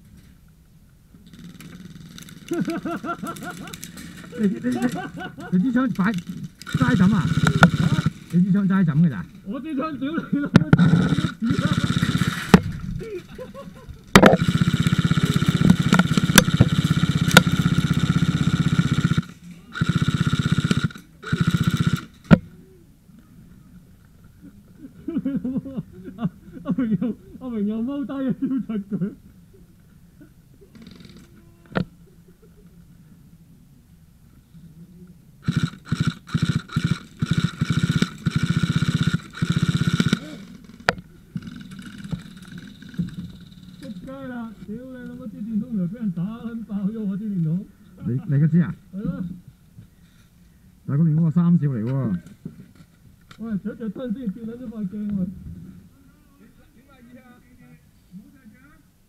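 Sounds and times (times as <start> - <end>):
airsoft gun firing full auto: 1.3 - 5.2, 6.1 - 8.5, 10.8 - 12.8, 14.1 - 22.5, 35.4 - 44.1
sharp crack: 6.0 - 8.6, 14.1 - 22.5.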